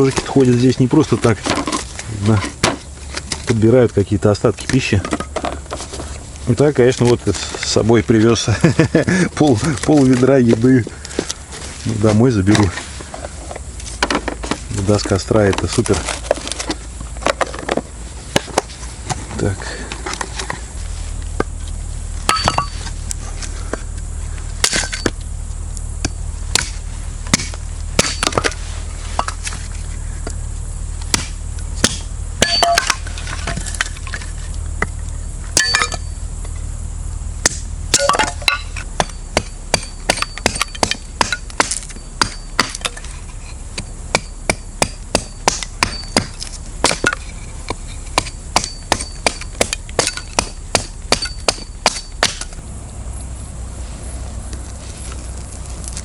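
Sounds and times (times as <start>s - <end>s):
hatchet chopping wood: 22.3s - 22.8s, 24.6s - 25.2s, 26.0s - 28.6s, 31.0s - 34.0s, 37.4s - 43.0s, 43.8s - 52.6s.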